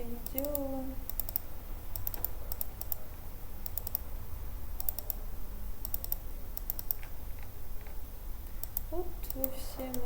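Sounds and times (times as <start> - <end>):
steady low hum: 0.0 - 10.0
keyboard keys clicking: 4.8 - 5.2, 5.8 - 8.0.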